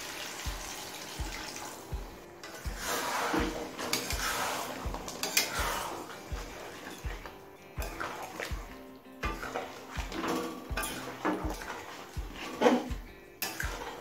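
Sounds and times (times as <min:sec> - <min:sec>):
background music with steady beat: 0:00.0 - 0:14.0
water sizzling in a pan: 0:00.0 - 0:14.0
spatula clinking against pan: 0:05.1 - 0:05.8, 0:10.7 - 0:11.6.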